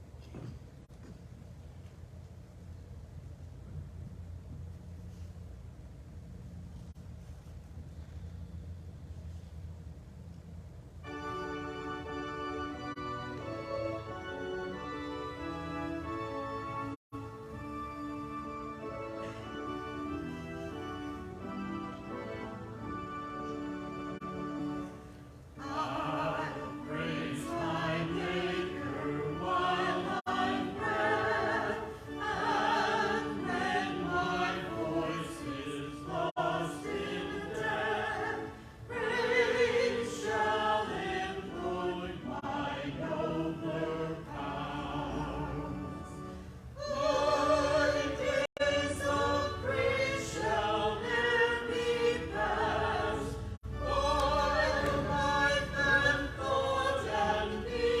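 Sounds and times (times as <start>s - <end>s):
musical accompaniment: 11.0s - 58.0s
choir singing: 25.6s - 58.0s.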